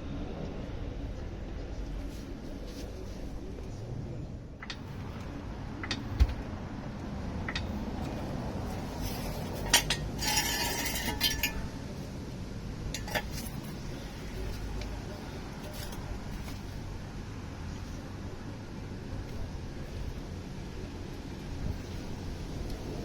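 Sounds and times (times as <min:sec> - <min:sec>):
metal scraping: 0:07.5 - 0:12.2, 0:12.9 - 0:16.8
metallic clinks and knocks: 0:09.1 - 0:11.8, 0:12.9 - 0:13.8.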